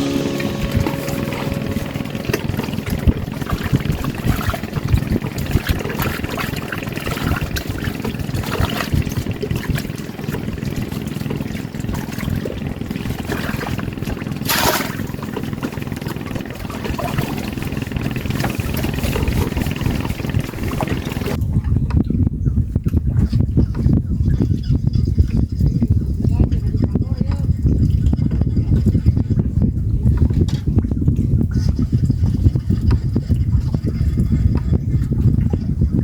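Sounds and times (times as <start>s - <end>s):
water against floating raft: 0.0s - 21.9s, 22.8s - 36.0s
wind rumble on microphone: 0.0s - 36.0s.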